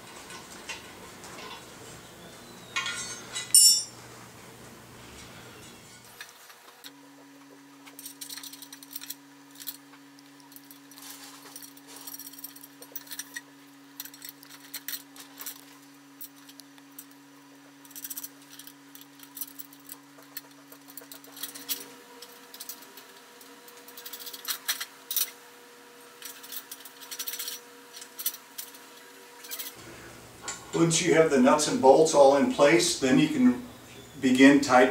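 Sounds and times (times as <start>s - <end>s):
metal nuts and bolts clinking: 2.7s - 4.0s, 7.9s - 17.2s, 17.8s - 25.4s, 26.2s - 28.8s, 29.4s - 29.8s.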